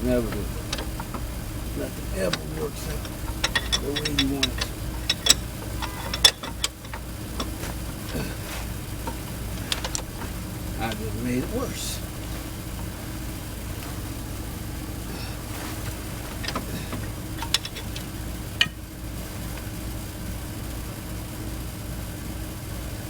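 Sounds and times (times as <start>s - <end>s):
low engine-like hum: 0.0s - 23.0s
sharp clicks or knocks: 2.3s - 10.5s, 16.3s - 18.8s.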